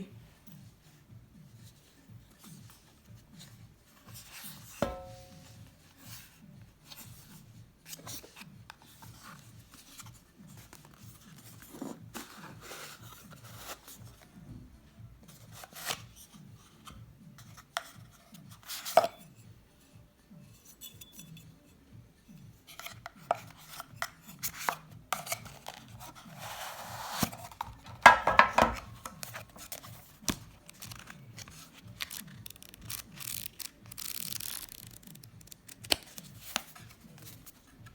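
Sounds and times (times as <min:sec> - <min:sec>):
rubbing and rustling packaging: 0:22.8 - 0:37.9.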